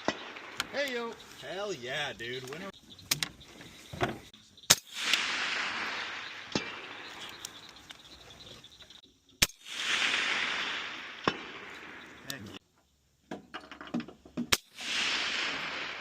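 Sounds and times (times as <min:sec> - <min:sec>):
suppressed rifle shots with echo: 0:00.0 - 0:01.0, 0:04.7 - 0:07.8, 0:09.4 - 0:12.4, 0:14.5 - 0:16.0
bullet striking steel target: 0:09.4 - 0:12.0.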